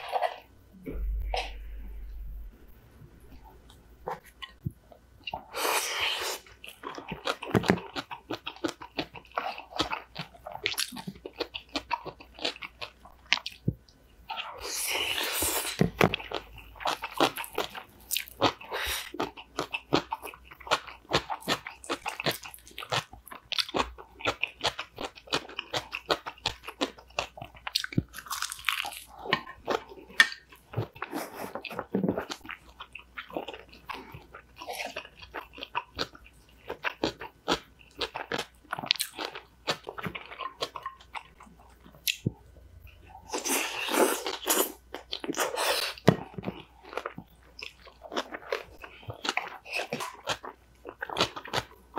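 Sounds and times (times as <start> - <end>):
crunchy chewing: 14.3 - 42.2, 42.9 - 51.9.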